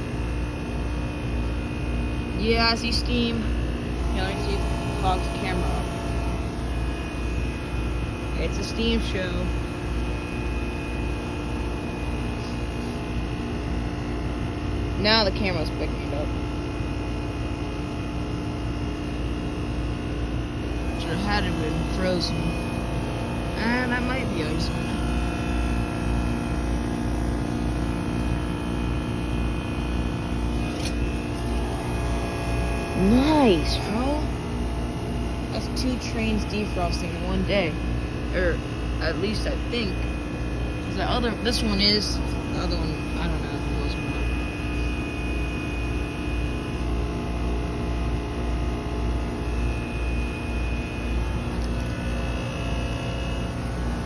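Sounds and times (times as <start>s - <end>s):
compressor humming: 0.0s - 54.0s
heat pump mechanical drone: 0.0s - 54.0s
low pulsing throb: 1.4s - 16.4s, 20.2s - 47.8s.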